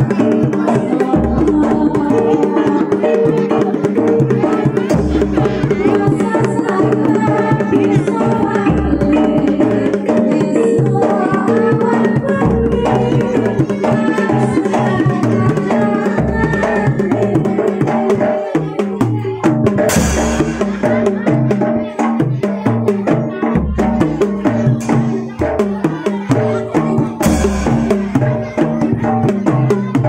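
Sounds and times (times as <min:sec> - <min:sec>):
gamelan-style percussion: 0:00.0 - 0:30.0
hand drums beating steady rhythm: 0:00.0 - 0:30.0.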